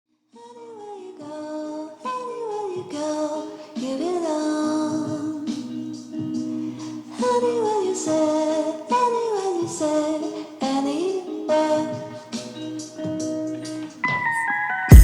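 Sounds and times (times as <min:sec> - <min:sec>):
music with sung vocals: 0:00.3 - 0:15.0.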